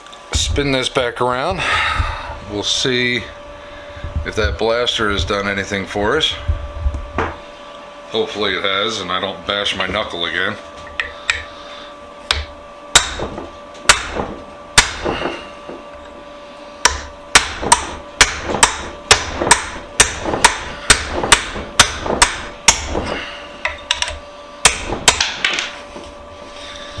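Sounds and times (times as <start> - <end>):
hammer striking metal punch: 12.3 - 15.8, 16.8 - 25.7.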